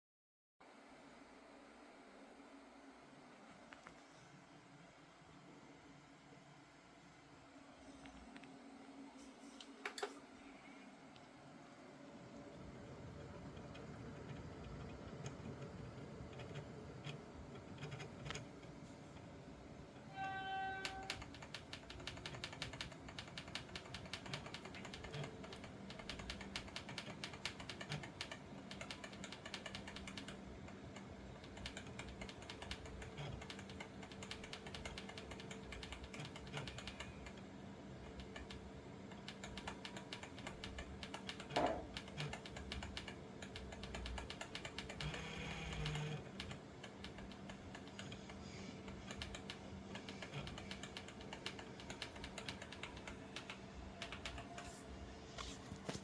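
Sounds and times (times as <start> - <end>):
cpu cooler whine: 0.6 - 56.0
fast clicking rattle: 20.8 - 37.4, 38.1 - 54.8.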